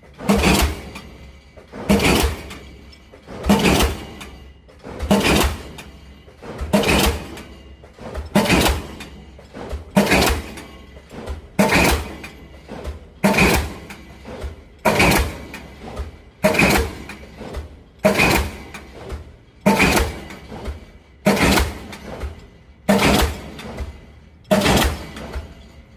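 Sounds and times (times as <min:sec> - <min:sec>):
pile-driving hammer blows: 0:00.0 - 0:25.9.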